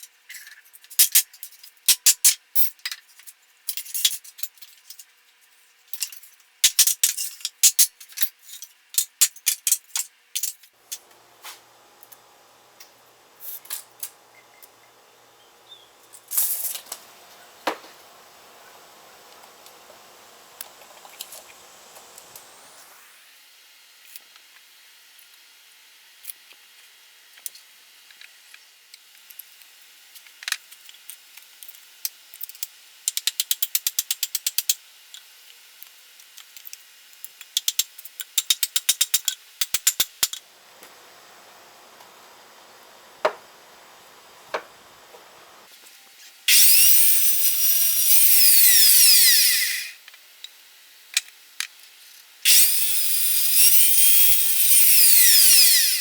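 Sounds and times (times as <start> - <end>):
power tool motor whine: 10.8 - 23.3, 40.4 - 45.7, 46.5 - 50.0, 52.5 - 56.0
taps on wood: 17.6 - 18.0, 43.2 - 43.6, 44.4 - 45.3.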